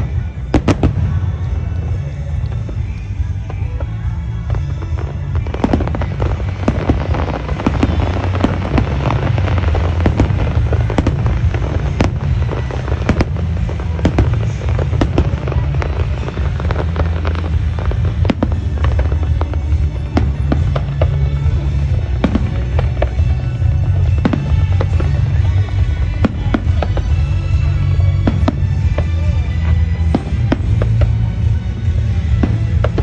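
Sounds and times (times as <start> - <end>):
continuous low rumble: 0.0 - 33.0
fireworks bangs and crackles: 0.0 - 33.0.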